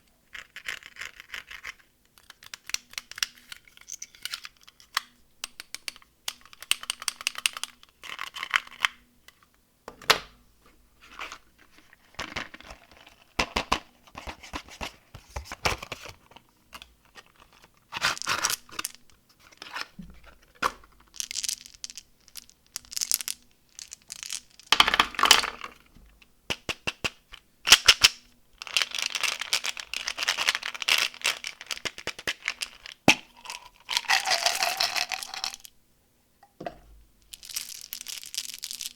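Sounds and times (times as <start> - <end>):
plastic wrappers crinkling and tearing: 28.6 - 35.6.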